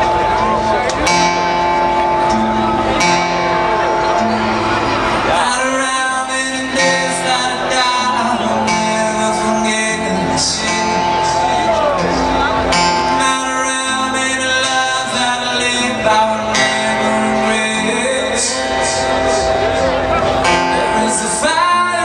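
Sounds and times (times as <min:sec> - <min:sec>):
strummed acoustic guitar: 0:00.0 - 0:22.0
person singing: 0:05.2 - 0:22.0.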